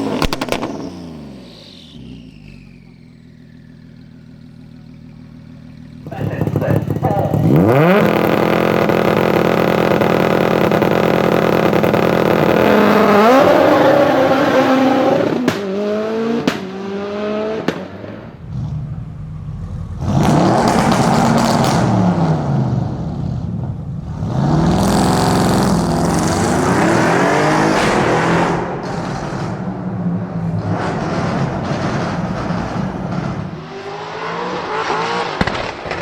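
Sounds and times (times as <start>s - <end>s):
car engine revving: 0.0s - 36.0s
sharp exhaust bangs: 6.0s - 13.5s, 17.6s - 36.0s.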